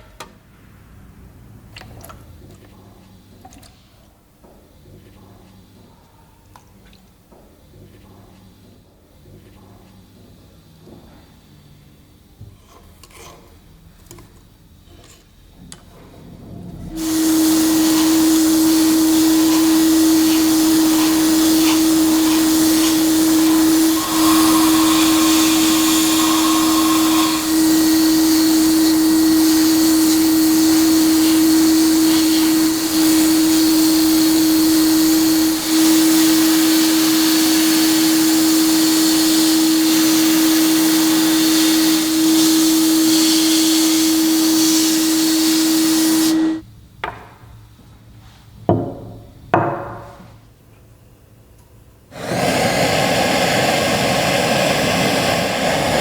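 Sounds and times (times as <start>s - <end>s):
electric power tool running: 17.0s - 46.6s, 52.2s - 56.0s.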